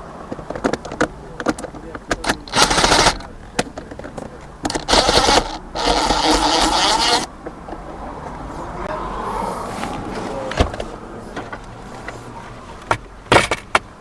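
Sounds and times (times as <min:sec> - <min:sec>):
sharp plastic clicks: 0:00.3 - 0:07.3
plastic trim scraping: 0:00.4 - 0:07.3.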